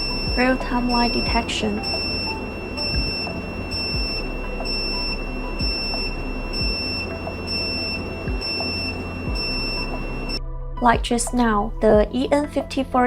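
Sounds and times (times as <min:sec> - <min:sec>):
high-pitched electronic fault tone: 0:00.0 - 0:10.4
background music: 0:00.0 - 0:13.0.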